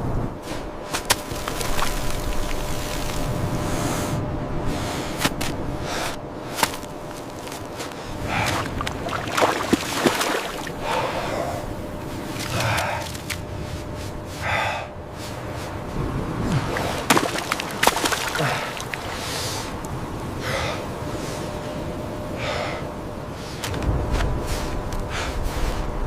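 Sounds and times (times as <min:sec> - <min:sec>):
person breathing hard: 0:03.6 - 0:06.7, 0:07.7 - 0:09.0, 0:10.6 - 0:15.8, 0:18.2 - 0:19.8, 0:20.4 - 0:21.6, 0:22.3 - 0:23.7, 0:24.4 - 0:26.0.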